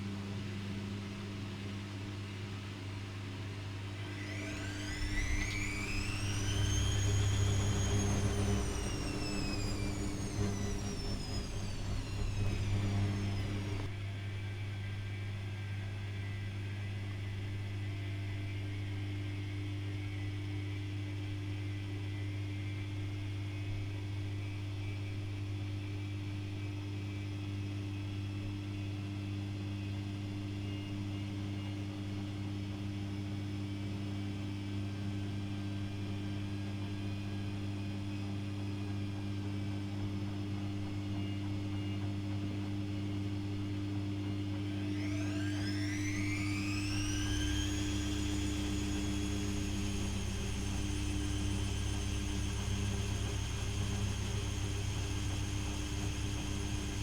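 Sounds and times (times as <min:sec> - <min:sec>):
washing machine humming: 0:03.9 - 0:14.0, 0:39.5 - 0:57.0
falling whine: 0:04.0 - 0:14.0, 0:44.6 - 0:57.0.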